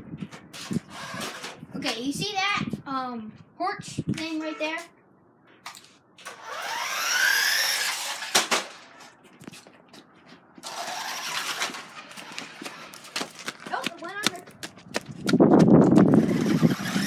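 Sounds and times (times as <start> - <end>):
toy car electric motor whining: 0.9 - 1.6, 6.2 - 8.6, 10.6 - 12.9, 16.1 - 17.0.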